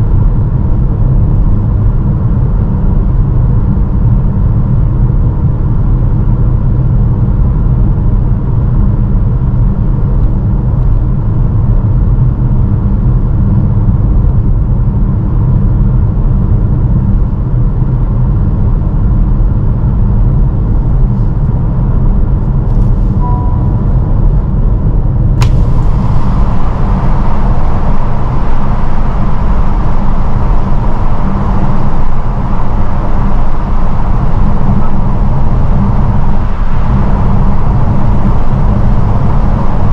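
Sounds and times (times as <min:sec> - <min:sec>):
car road noise rumble: 0:00.0 - 0:39.9
faint high whine: 0:20.9 - 0:39.9
sharp click: 0:25.4 - 0:25.7
wind rushing hiss: 0:25.4 - 0:39.9.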